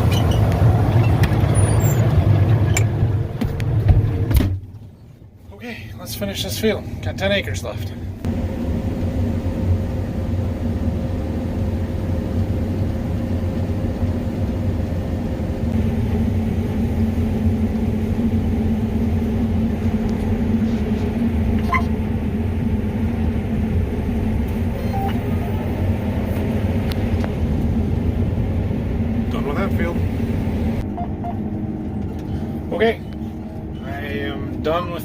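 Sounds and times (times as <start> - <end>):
combine harvester running: 0.0 - 35.0
brief beep: 24.7 - 25.8, 31.0 - 31.4.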